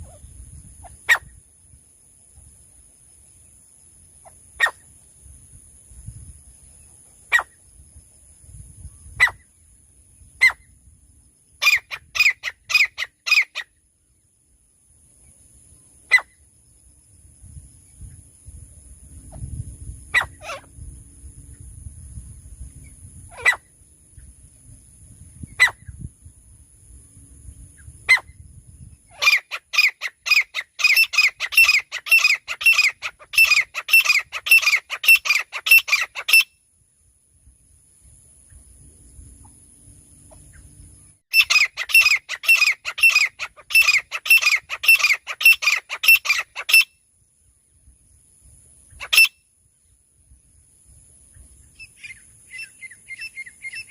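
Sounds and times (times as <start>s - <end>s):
francolin calling: 0.0s - 2.5s, 3.2s - 7.8s, 8.5s - 14.3s, 15.1s - 16.7s, 20.1s - 20.9s, 27.6s - 36.7s, 40.2s - 47.1s, 48.8s - 50.0s, 51.3s - 53.9s.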